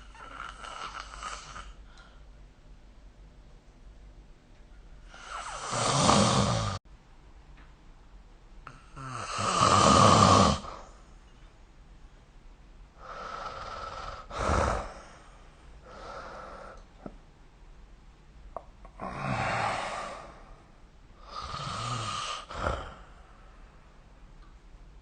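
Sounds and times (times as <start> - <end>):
person snoring: 5.1 - 6.8, 8.7 - 10.8, 13.0 - 16.8, 19.0 - 20.6, 21.2 - 23.3.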